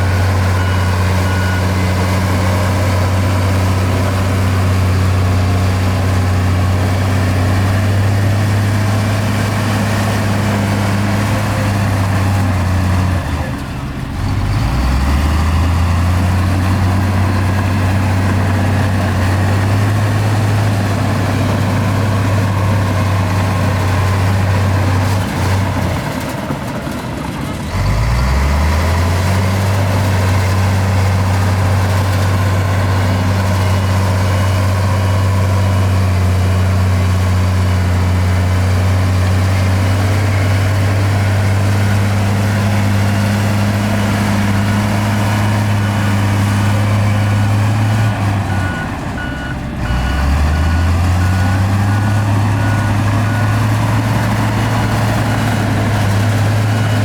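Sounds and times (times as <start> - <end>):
low reversing alarm beeps: 0.0 - 4.6, 45.6 - 57.0
heavy diesel engine under load: 0.0 - 57.0
high-pitched reversing alarm beeps: 48.5 - 54.1.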